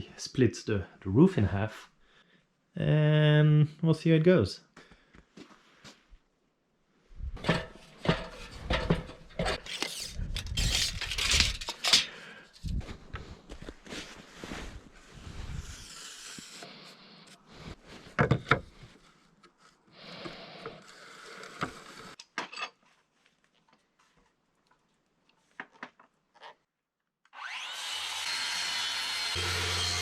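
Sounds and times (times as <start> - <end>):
wood being handled and scraped: 7.4 - 22.2, 22.8 - 26.7
power tool humming: 27.4 - 30.0.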